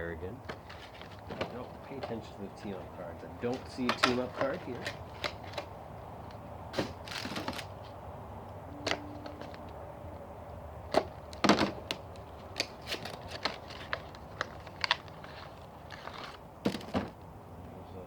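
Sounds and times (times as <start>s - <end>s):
plastic packaging clicks and crackles: 10.9s - 16.4s.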